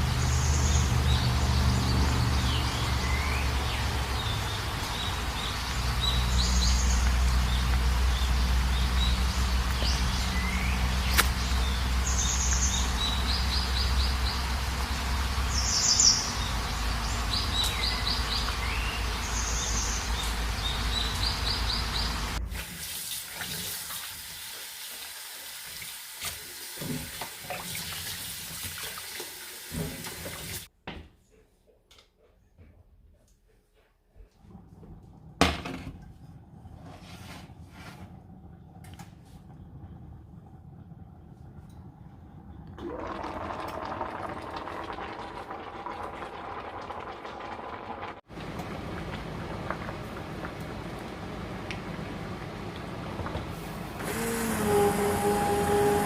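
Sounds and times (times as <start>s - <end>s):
small birds chirping and trilling: 15.3s - 22.4s
steady low rumble: 36.0s - 42.8s.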